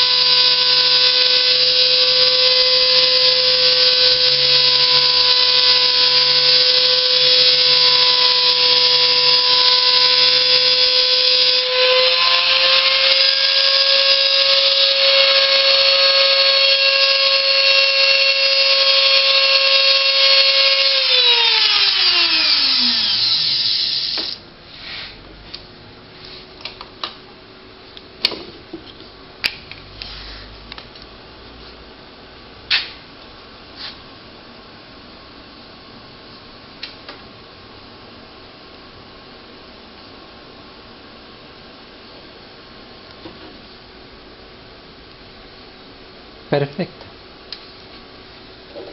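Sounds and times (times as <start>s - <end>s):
spindle motor whine: 0.0s - 24.4s.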